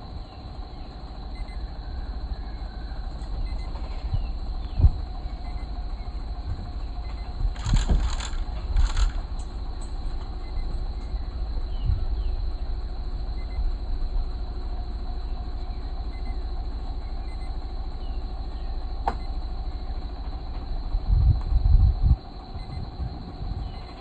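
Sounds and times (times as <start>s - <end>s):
vehicle engine and road rumble: 0.0s - 24.0s
sharp click: 7.6s - 9.5s.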